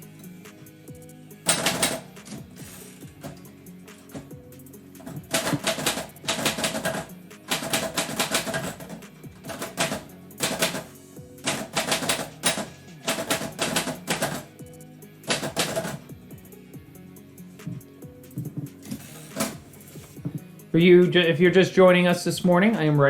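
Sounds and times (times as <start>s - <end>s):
typewriter typing: 1.5s - 4.3s, 5.0s - 14.5s, 15.3s - 16.1s, 18.9s - 19.7s.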